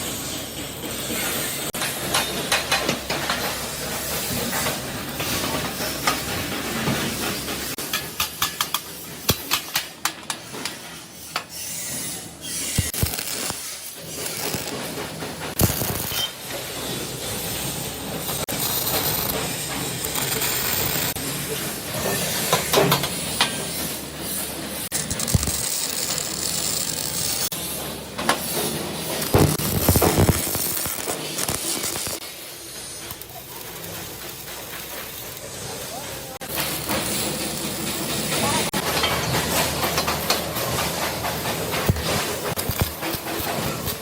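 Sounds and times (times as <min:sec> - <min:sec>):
sharp metallic clicks and knocks: 0:01.8 - 0:03.6, 0:07.8 - 0:11.5.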